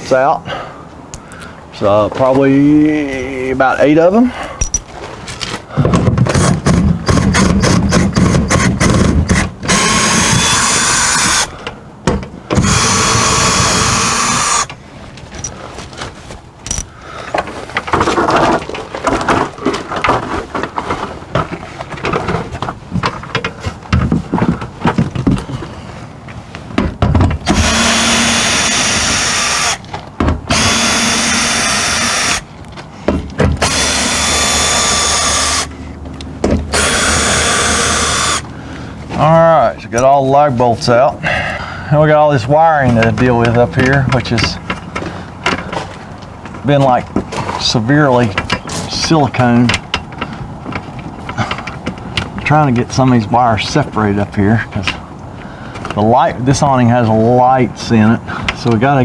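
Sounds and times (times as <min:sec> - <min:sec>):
power driver backing out bolts: 0:05.6 - 0:14.8, 0:26.6 - 0:59.0.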